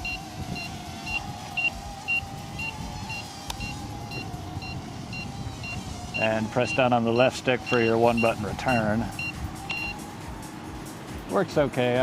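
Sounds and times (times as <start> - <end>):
quadcopter motors whining: 0.0 - 10.4
short high beeps: 9.2 - 10.0.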